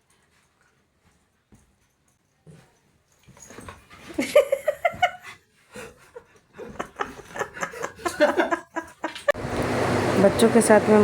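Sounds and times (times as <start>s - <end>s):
person laughing and giggling: 4.2s - 9.4s.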